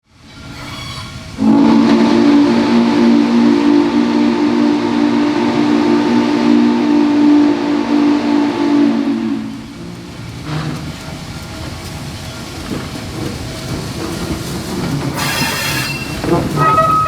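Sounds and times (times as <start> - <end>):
steam locomotive chime whistle: 0.5 - 9.6, 15.2 - 17.0.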